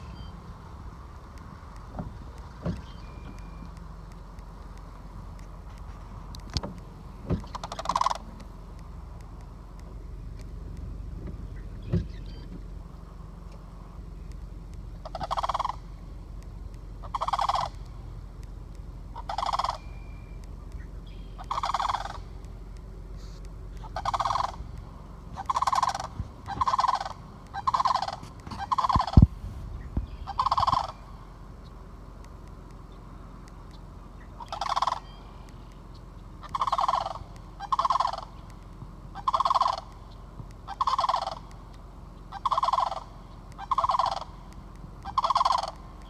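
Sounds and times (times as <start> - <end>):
cranes calling: 0.0 - 10.2, 11.2 - 46.0
steady low rumble: 0.0 - 46.0
sharp low thump: 28.5 - 30.8.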